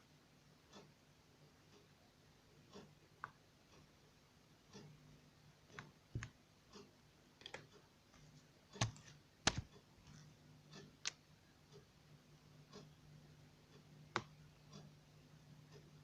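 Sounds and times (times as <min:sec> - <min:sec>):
faint low hum: 0:00.0 - 0:16.0
light clicks and taps: 0:02.7 - 0:03.9, 0:05.7 - 0:11.8, 0:13.7 - 0:14.9.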